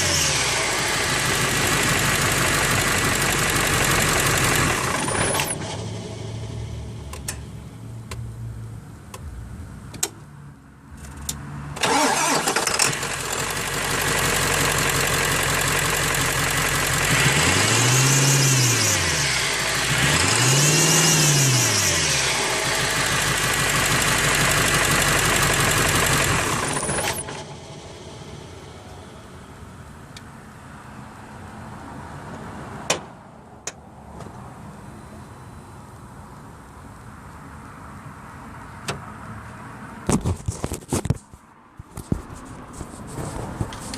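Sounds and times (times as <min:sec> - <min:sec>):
low hum: 0:05.6 - 0:09.6, 0:27.2 - 0:30.8
truck engine revving: 0:17.0 - 0:22.9, 0:25.0 - 0:29.6.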